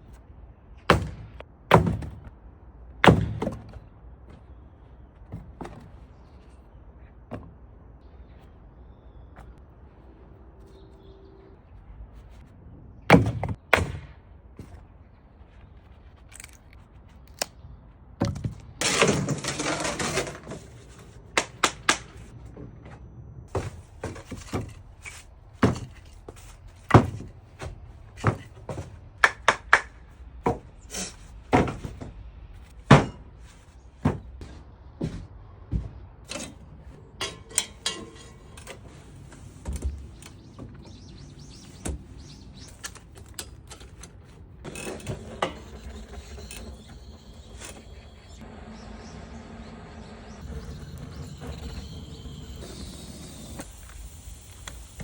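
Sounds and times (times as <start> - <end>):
axe chopping wood: 0.9 - 2.3, 3.0 - 3.8, 13.1 - 14.2
rough scraping: 18.8 - 21.2.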